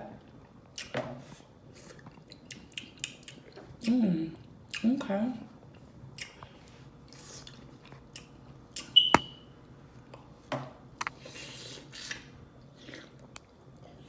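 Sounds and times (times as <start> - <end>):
person chewing wetly: 1.7 - 3.7.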